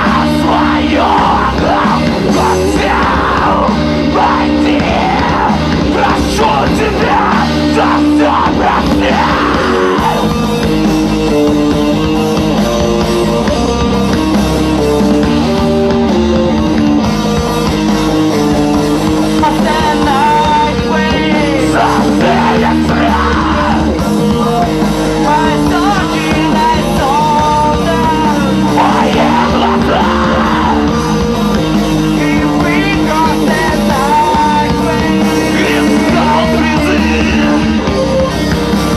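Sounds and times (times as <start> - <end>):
person singing and yelling: 0.0 - 10.8, 18.6 - 38.9
rock band playing live: 0.0 - 38.9.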